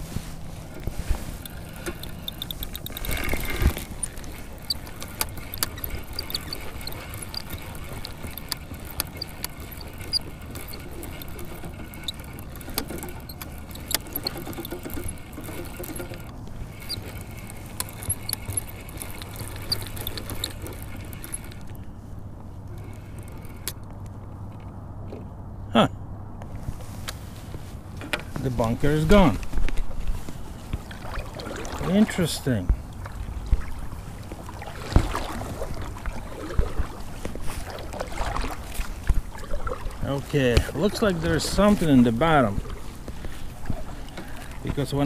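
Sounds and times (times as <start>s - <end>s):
fishing gear clicking and squeaking: 0.0s - 25.5s, 27.1s - 45.0s
wind noise: 32.6s - 44.9s.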